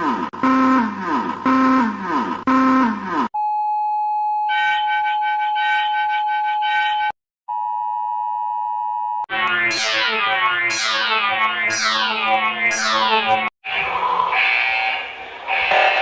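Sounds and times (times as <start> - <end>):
pulsing buzzy tone: 9.3 - 13.5
steady high electronic tone: 9.3 - 16.0.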